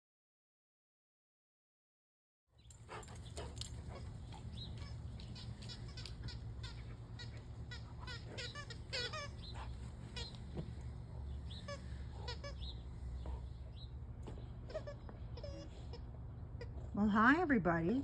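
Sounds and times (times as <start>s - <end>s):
low steady rumble: 2.6s - 18.0s
squeaky dog toy squeaking: 4.8s - 10.4s, 11.5s - 12.8s, 14.6s - 16.8s.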